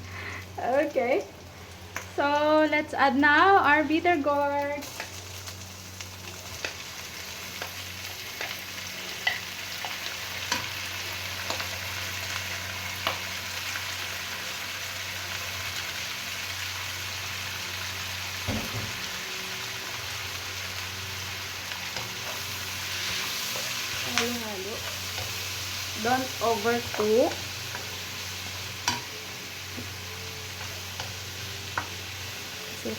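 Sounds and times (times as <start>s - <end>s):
food sizzling in hot oil: 0.0s - 32.9s.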